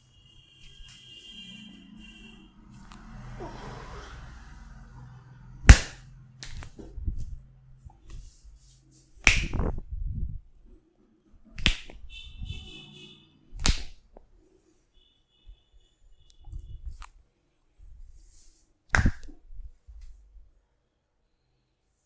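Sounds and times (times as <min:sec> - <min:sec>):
sharp hand slaps: 0:05.6 - 0:06.8, 0:09.2 - 0:09.8, 0:11.6 - 0:12.0, 0:13.6 - 0:14.0, 0:18.9 - 0:19.4.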